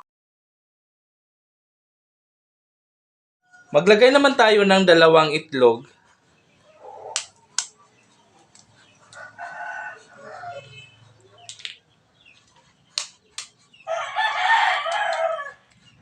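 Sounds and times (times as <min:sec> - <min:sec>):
eggs cracked with sharp taps: 0:07.1 - 0:07.8, 0:11.5 - 0:11.8, 0:12.9 - 0:13.6
rooster crowing: 0:09.0 - 0:11.4, 0:13.8 - 0:15.7.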